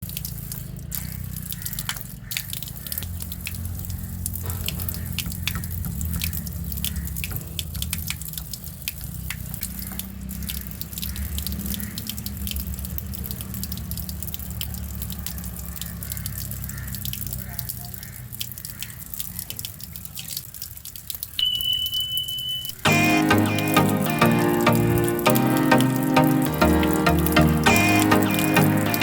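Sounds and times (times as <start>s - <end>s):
faucet dripping: 0.0s - 29.0s.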